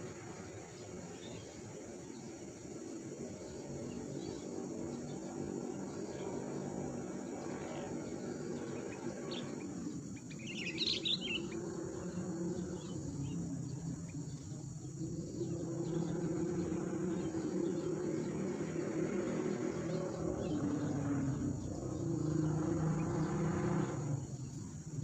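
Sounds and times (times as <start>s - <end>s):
insects droning: 0.0s - 25.0s
bird chirps: 7.4s - 25.0s.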